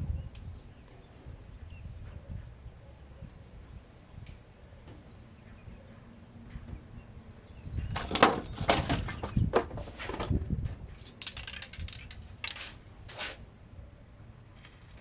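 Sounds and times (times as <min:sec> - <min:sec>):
metal tools clinking: 0:11.0 - 0:13.2.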